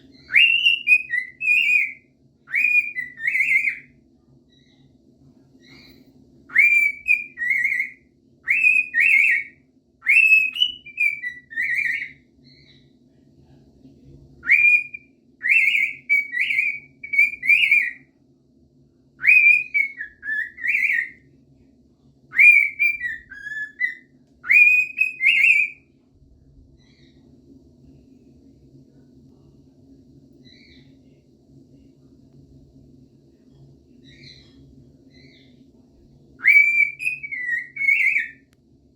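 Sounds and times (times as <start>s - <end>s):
cockatiel whistling: 0.2s - 3.9s, 6.5s - 12.8s, 14.4s - 18.0s, 19.2s - 21.2s, 22.3s - 25.8s, 36.4s - 38.4s.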